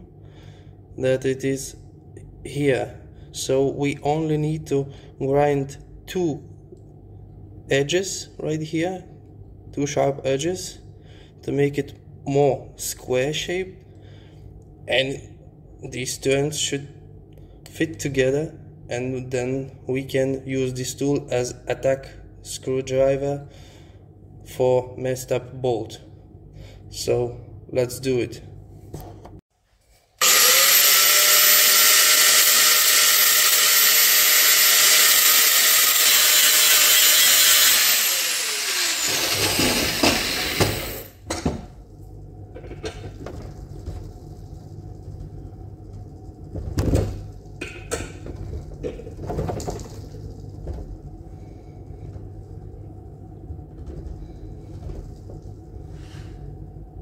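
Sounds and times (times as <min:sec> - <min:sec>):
power grinder grinding metal: 0:30.2 - 0:41.2.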